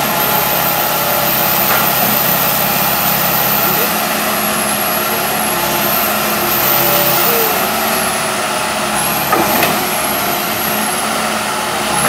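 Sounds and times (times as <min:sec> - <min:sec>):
high wavering whine: 0:00.0 - 0:08.4
excavator diesel engine running: 0:00.0 - 0:12.0.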